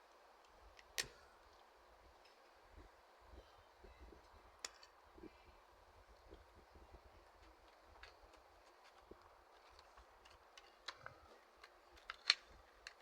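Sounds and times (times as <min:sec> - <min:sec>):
plastic packaging clicks and taps: 0:07.4 - 0:13.0.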